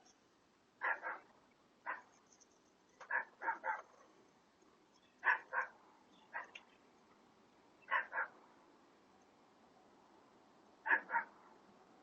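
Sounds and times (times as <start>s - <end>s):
dog barking: 0.8s - 2.1s, 3.1s - 4.0s, 5.2s - 6.6s, 7.9s - 8.4s, 10.8s - 11.4s.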